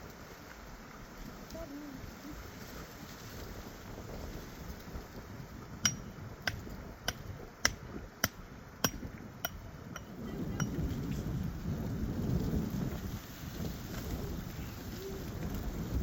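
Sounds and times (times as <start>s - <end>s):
hammer striking: 5.8s - 10.8s.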